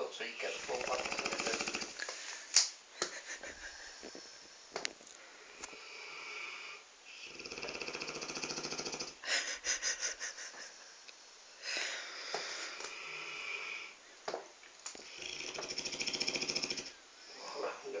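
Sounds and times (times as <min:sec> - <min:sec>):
dog snoring: 0:00.2 - 0:02.0, 0:05.7 - 0:09.2, 0:15.0 - 0:17.6.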